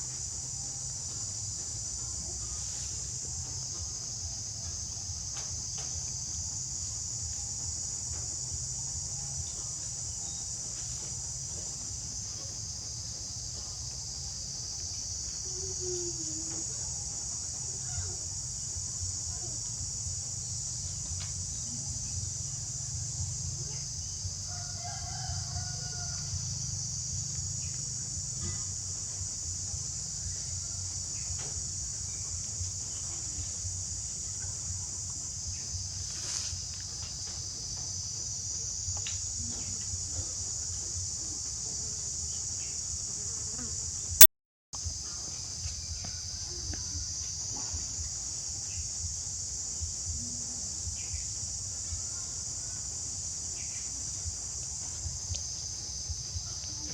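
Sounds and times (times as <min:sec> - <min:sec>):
insects chirring: 0:00.0 - 0:56.9
faint rooster crow: 0:24.4 - 0:26.8, 0:45.8 - 0:47.7.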